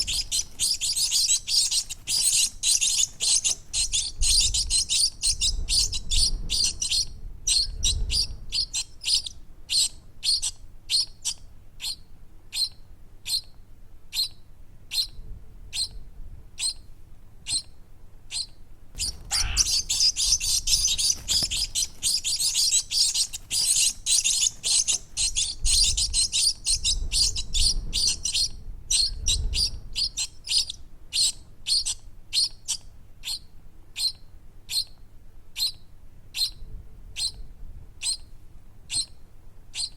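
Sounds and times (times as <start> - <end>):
baby birds chirping: 0.0 - 13.5, 14.1 - 15.1, 18.3 - 33.4, 34.0 - 34.9, 35.6 - 36.6, 38.0 - 38.3.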